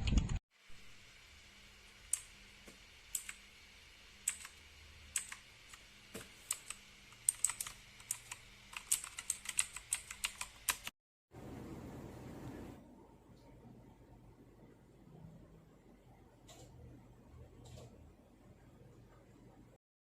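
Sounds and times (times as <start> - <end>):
mechanical keyboard typing: 0.0 - 0.4, 3.1 - 3.4, 4.3 - 5.8, 6.4 - 10.9.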